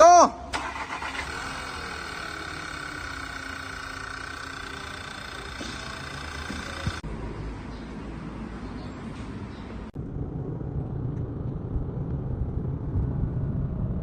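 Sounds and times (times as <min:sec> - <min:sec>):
car engine idling with high whine: 0:00.5 - 0:07.8, 0:09.6 - 0:14.0.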